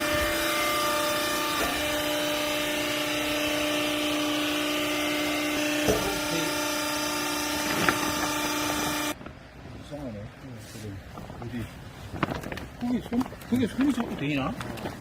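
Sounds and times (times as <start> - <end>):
motor and pump humming: 0.0 - 9.2.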